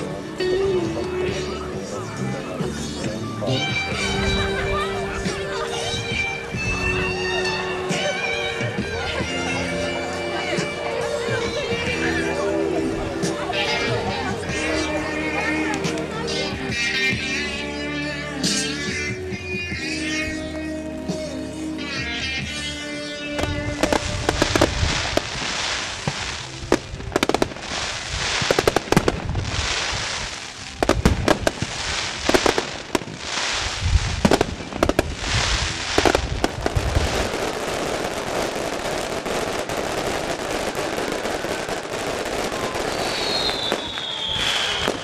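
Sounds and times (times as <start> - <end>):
fireworks bangs and crackles: 23.3 - 45.0
firework falling whistle: 40.8 - 45.0.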